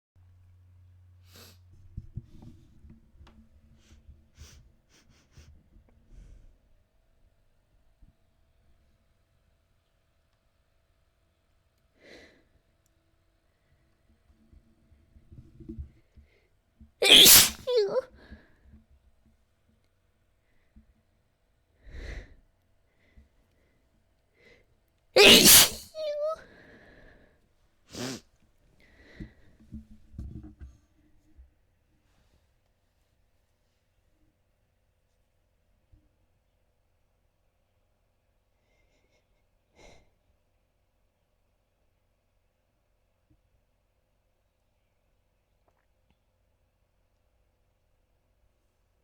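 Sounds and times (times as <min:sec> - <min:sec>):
woman sniffing: 0:01.3 - 0:01.6, 0:17.0 - 0:18.0, 0:25.2 - 0:26.4, 0:27.9 - 0:28.2
woman sneezing: 0:17.0 - 0:18.1, 0:25.2 - 0:26.4, 0:27.9 - 0:28.2
woman breathing in: 0:21.8 - 0:22.4.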